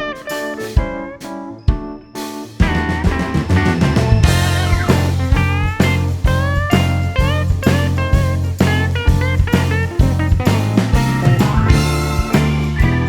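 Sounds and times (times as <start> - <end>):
blues-rock lead guitar: 0.0 - 13.0
drum beat: 0.0 - 13.0
bass guitar: 2.6 - 13.0.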